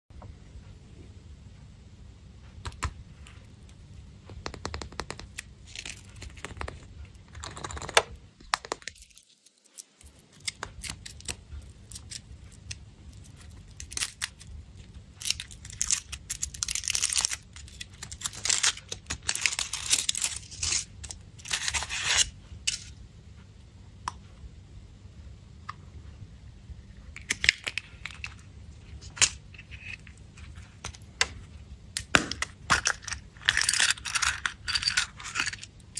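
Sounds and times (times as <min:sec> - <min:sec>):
candy wrapper foil crinkling: 0:04.7 - 0:22.9, 0:32.0 - 0:35.9.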